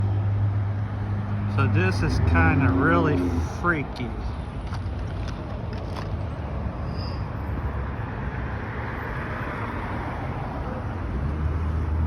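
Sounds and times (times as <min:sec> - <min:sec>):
vehicle passing by: 0:00.0 - 0:04.3
traffic low rumble: 0:00.0 - 0:12.0.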